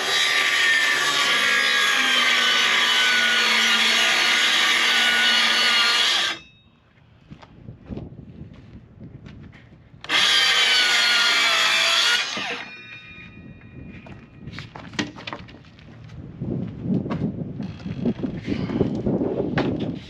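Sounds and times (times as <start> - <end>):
power saw cutting plywood: 0.0 - 6.4, 10.1 - 12.8.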